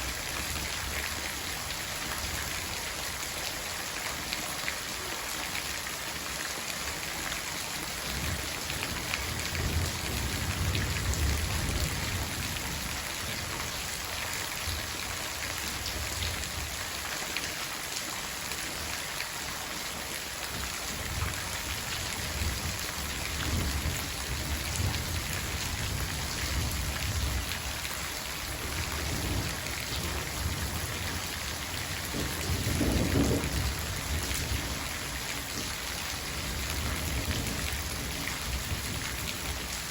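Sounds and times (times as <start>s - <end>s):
rain falling: 0.0s - 39.9s
thunder rumbling: 28.6s - 34.9s.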